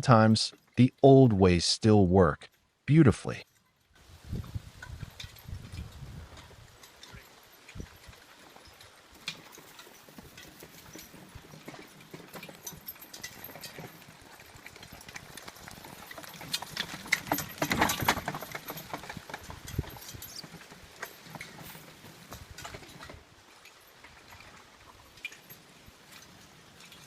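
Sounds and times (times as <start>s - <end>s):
horse hooves clip-clopping: 4.0s - 27.0s
knocks and clatter: 14.6s - 23.2s.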